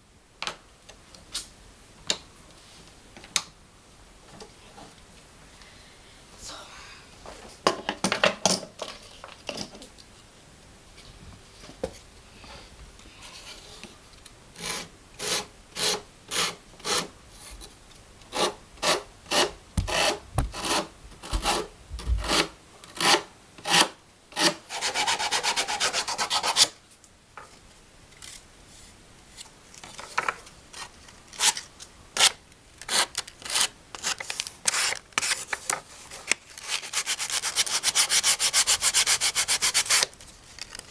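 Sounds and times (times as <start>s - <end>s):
hand saw cutting wood: 14.6s - 17.1s, 18.3s - 26.8s.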